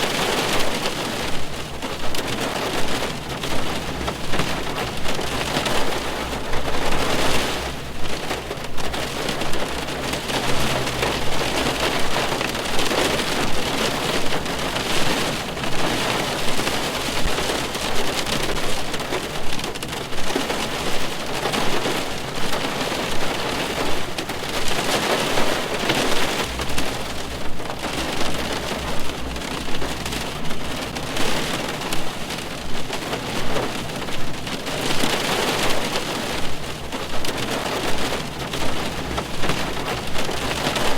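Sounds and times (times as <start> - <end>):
rain on car roof from inside: 0.0 - 40.9.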